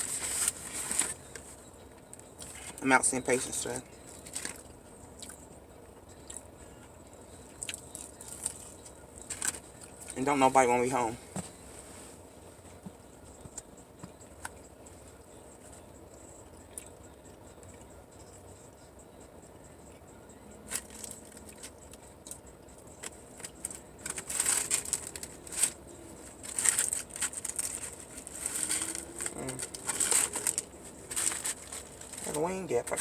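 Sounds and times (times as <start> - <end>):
paper packaging crinkling: 23.0 - 33.0.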